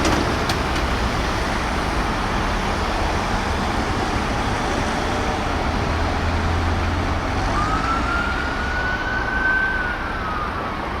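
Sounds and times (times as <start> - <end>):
road and engine noise: 0.0 - 11.0
fire engine siren wailing: 5.0 - 11.0.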